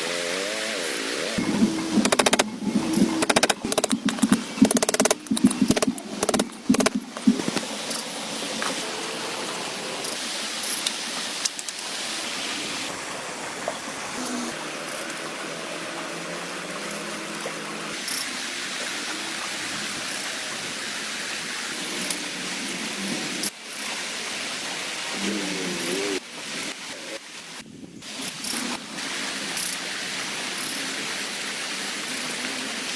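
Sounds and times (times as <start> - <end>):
steady rain falling: 0.8 - 32.9.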